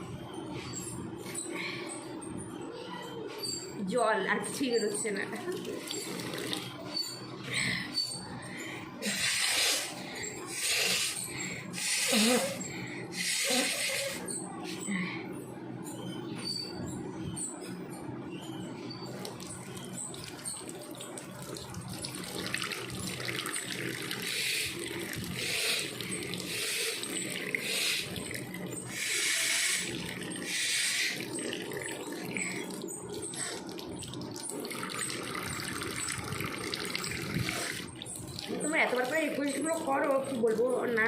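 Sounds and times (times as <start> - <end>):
tap water running into sink: 5.6 - 6.7, 19.2 - 40.7.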